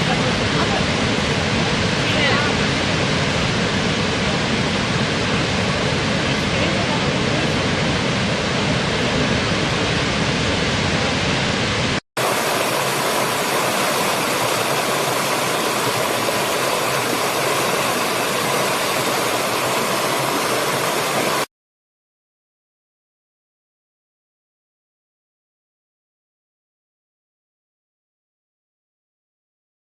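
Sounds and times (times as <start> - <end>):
waterfall roaring: 0.0 - 21.5.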